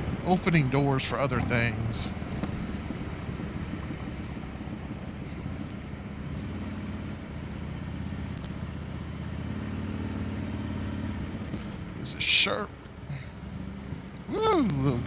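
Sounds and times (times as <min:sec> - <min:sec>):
motorcycle engine rumbling: 0:00.0 - 0:15.0.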